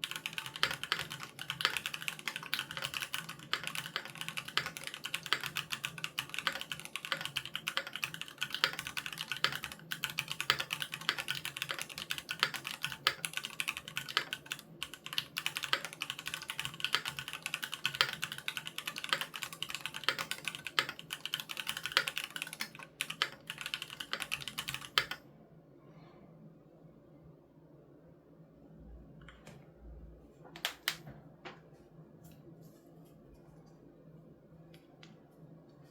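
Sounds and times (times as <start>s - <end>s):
fast mechanical keyboard typing: 0.0s - 25.2s.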